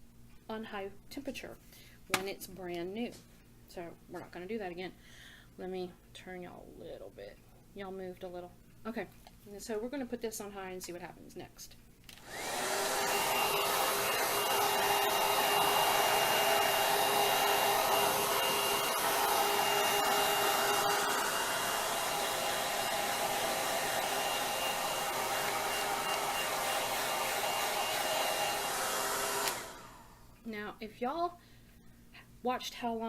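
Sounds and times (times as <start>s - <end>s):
hair dryer blowing with whine: 12.1s - 30.3s.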